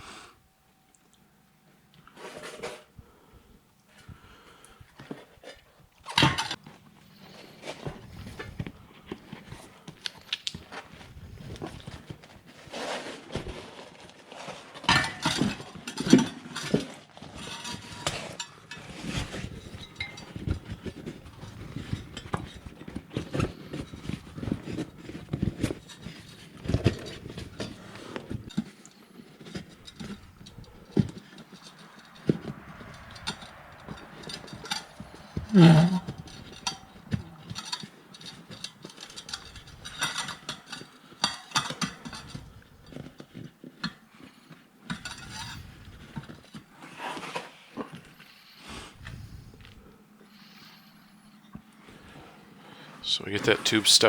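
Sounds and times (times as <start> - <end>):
rubber rubbing and rustling: 7.4 - 14.8
clinks and knocks: 17.5 - 44.0.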